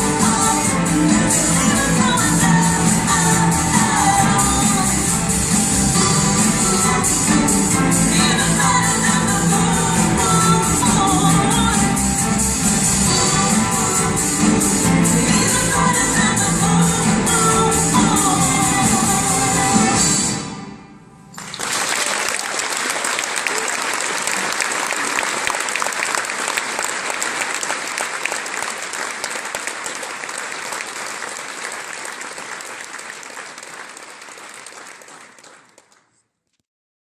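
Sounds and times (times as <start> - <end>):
audience applauding: 21.3 - 36.2.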